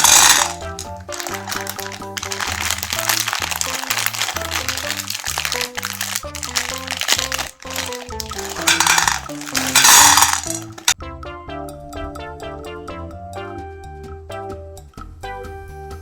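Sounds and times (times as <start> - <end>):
candies crunching in grinder: 0.0 - 11.0
background music: 0.0 - 16.0.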